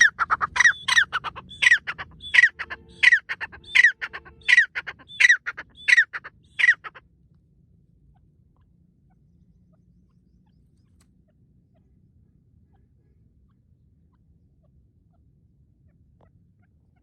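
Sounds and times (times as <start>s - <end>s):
francolin ringing calls: 0.0s - 7.0s.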